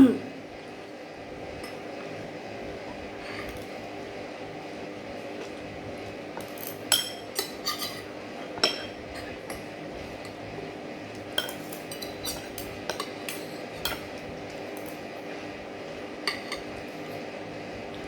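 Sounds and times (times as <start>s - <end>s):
cutlery clinking on a plate: 6.4s - 9.6s, 11.3s - 14.1s, 16.3s - 16.7s.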